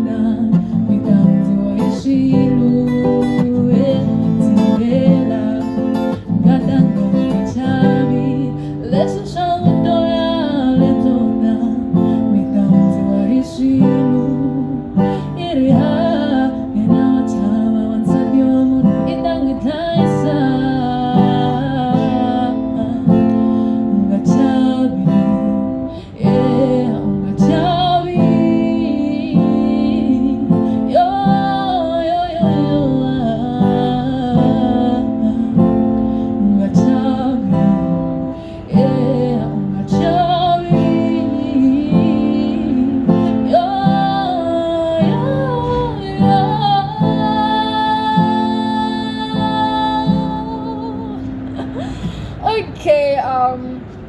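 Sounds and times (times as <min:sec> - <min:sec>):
song with guitar and singing: 0:00.0 - 0:54.0.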